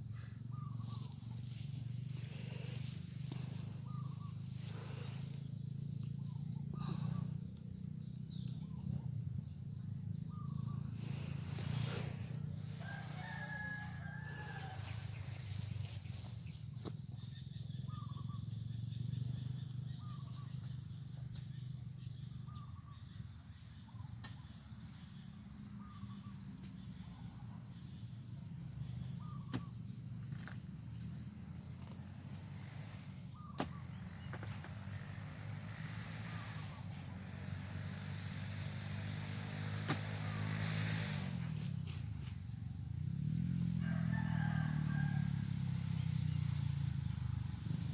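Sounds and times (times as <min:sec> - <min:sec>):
rooster crowing: 0:12.6 - 0:15.4, 0:43.6 - 0:46.0.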